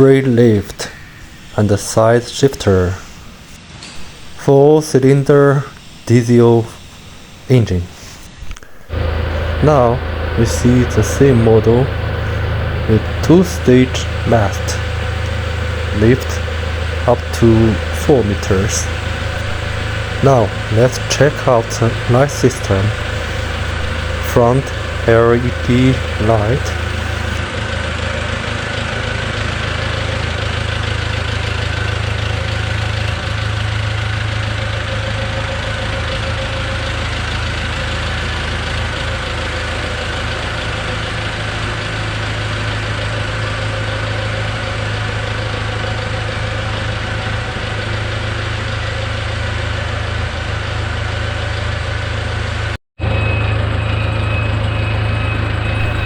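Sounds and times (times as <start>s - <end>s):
diesel engine idling: 4.0s - 4.7s, 7.8s - 52.7s, 55.8s - 56.0s
faint thin steady tone: 8.6s - 27.4s, 55.8s - 56.0s.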